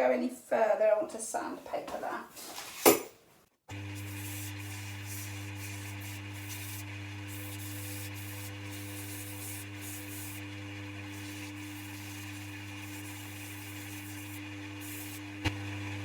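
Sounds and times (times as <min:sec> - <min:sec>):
wood lathe motor hum: 0:03.7 - 0:16.0
sandpaper rubbing spinning wood: 0:03.8 - 0:15.4.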